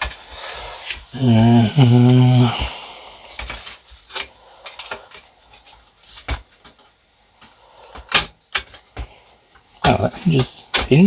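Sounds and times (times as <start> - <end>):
clicks of computer parts handled: 8.0 - 9.0.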